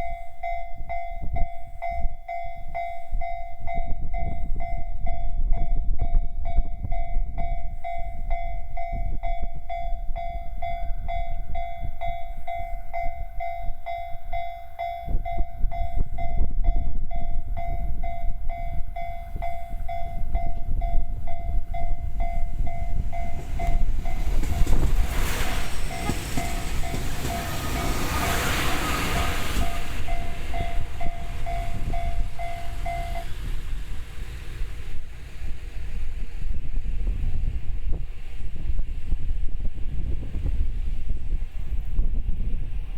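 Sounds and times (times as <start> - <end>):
railcar rumbling past: 0.0 - 42.9
level-crossing alarm ringing: 19.2 - 33.4.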